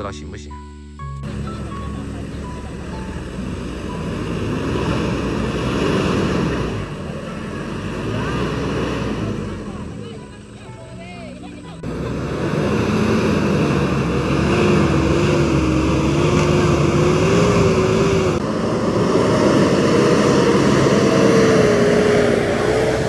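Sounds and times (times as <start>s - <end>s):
car engine revving hard: 1.2s - 10.7s, 11.8s - 23.0s
loud rushing noise: 11.8s - 23.0s.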